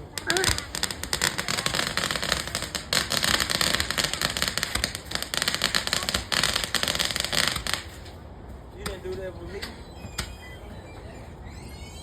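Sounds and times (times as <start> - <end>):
fireworks crackling bangs: 0.0 - 8.2.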